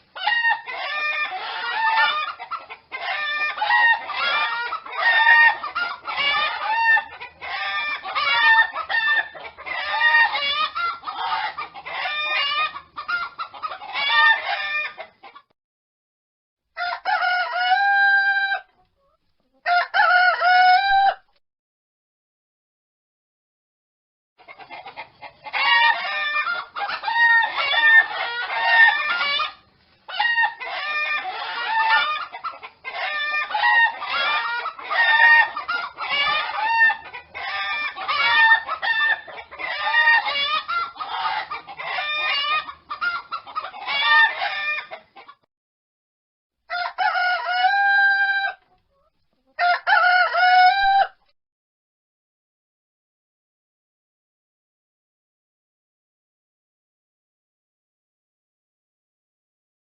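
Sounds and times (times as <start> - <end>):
chickens clucking: 0.0 - 15.6, 16.8 - 21.4, 24.4 - 45.5, 46.7 - 51.1
rooster crowing: 0.1 - 12.8, 16.8 - 18.7, 19.6 - 21.3, 25.5 - 42.7, 46.7 - 48.6, 49.6 - 51.2.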